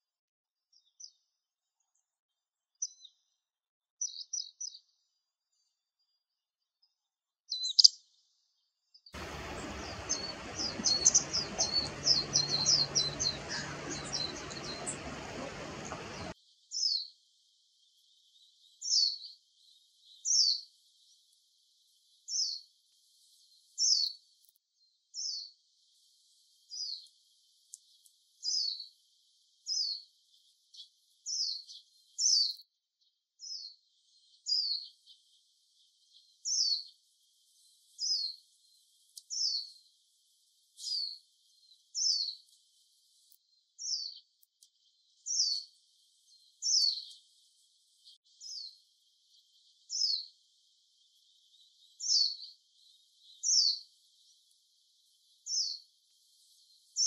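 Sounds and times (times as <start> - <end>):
bird call notes sliding downward: 9.2 - 16.4
faint hiss: 9.2 - 16.4
songbird twittering: 9.2 - 16.4.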